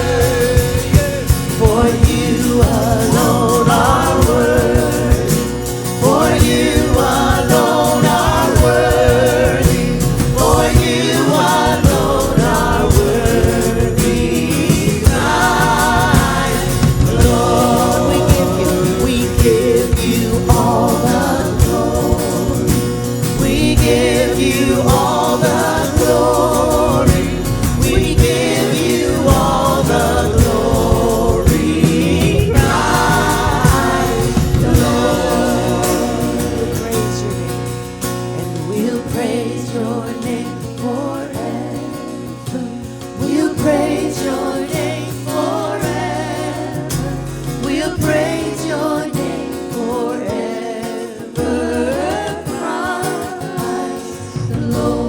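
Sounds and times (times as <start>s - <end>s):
band instrumental backing: 0.0s - 39.4s
bass: 0.0s - 55.0s
voices singing gospel song: 0.0s - 55.0s.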